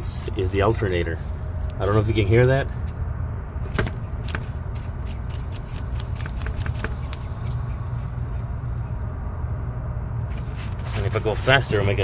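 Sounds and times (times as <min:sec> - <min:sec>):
pulley scraping and clicking: 0:03.8 - 0:08.5.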